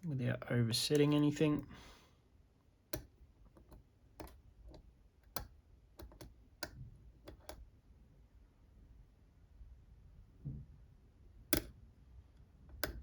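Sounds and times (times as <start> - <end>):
lock pick clicks: 11.5 - 11.8, 12.7 - 13.0.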